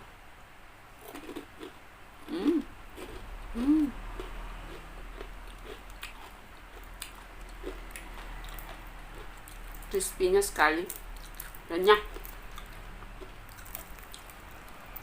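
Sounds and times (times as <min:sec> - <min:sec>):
person chewing crunchy food: 0:01.0 - 0:10.0, 0:10.9 - 0:15.0
closed-mouth hums of enjoyment: 0:02.2 - 0:02.7, 0:03.5 - 0:04.0.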